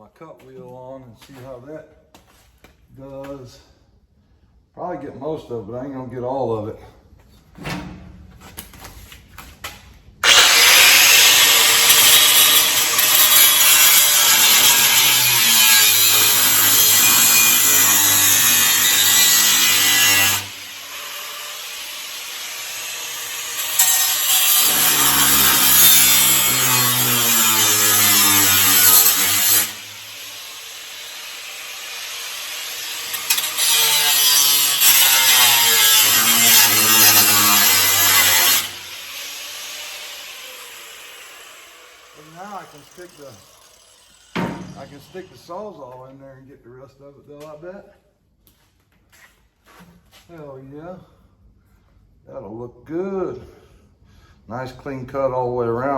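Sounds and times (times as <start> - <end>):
angle grinder cutting metal: 10.2 - 45.3.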